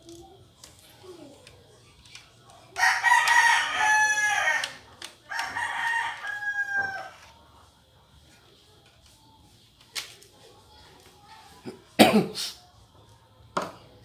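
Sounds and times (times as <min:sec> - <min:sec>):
rooster crowing: 0:02.7 - 0:07.4.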